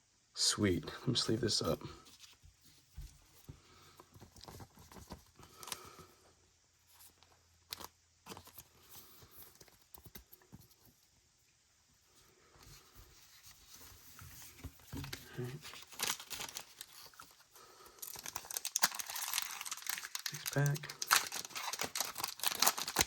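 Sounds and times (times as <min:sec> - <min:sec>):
plastic sleeve rustling: 0:12.5 - 0:23.0.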